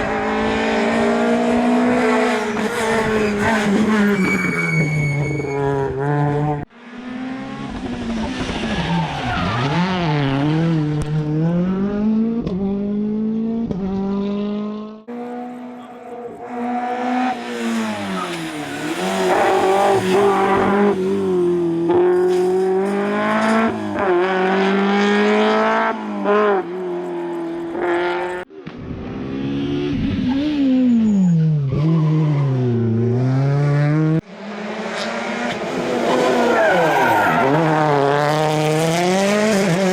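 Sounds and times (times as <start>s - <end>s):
rally car engines revving: 0.0s - 39.9s
tyre squeal: 2.4s - 6.2s, 17.6s - 23.7s, 36.1s - 37.8s.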